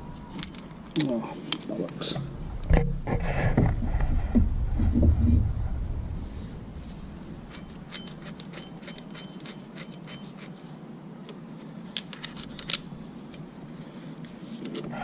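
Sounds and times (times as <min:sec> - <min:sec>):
metal tool parts clicking: 0:00.4 - 0:01.7, 0:07.5 - 0:10.6, 0:11.3 - 0:13.4.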